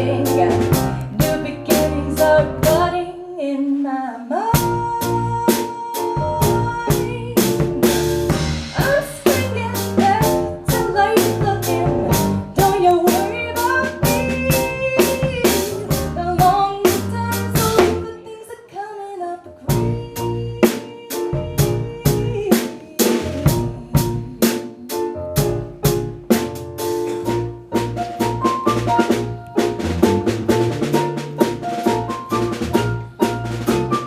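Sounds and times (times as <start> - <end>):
sharp percussive beat: 25.8 - 34.0.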